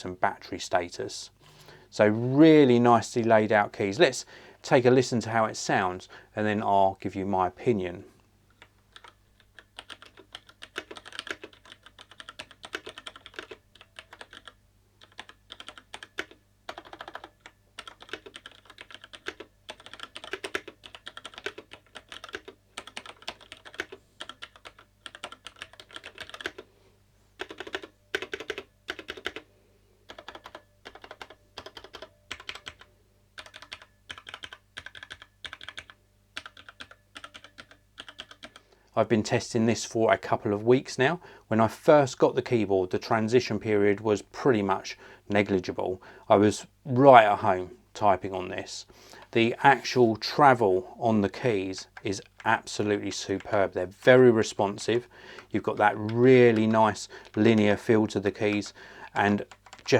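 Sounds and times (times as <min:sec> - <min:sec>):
mechanical keyboard typing: 0:08.9 - 0:26.6, 0:27.4 - 0:29.4, 0:30.1 - 0:38.6, 0:59.4 - 0:59.9.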